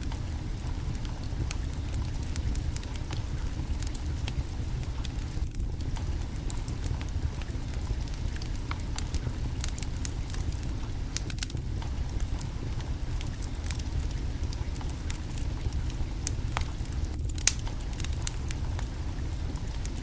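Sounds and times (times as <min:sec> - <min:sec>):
low rumble: 0:00.0 - 0:20.0
wood fire crackling: 0:00.0 - 0:20.0.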